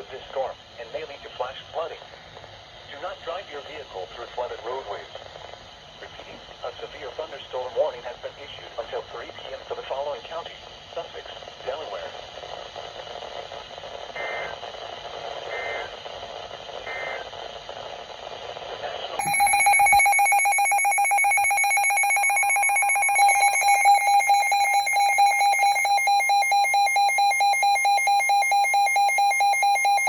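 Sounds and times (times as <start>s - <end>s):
radio hiss: 0.0s - 20.2s
buzzing data bursts: 19.2s - 30.0s
pulsing electronic alert alarms: 19.2s - 30.0s.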